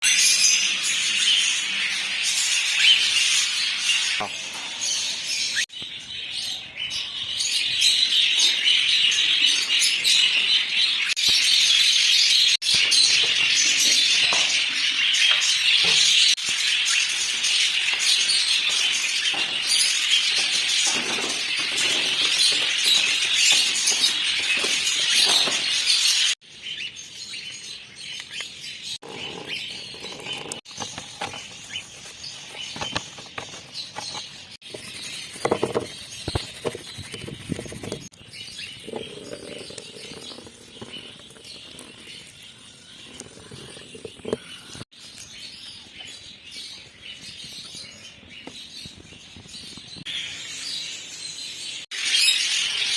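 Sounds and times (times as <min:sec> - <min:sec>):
cage birds chirping: 0:00.0 - 0:52.9.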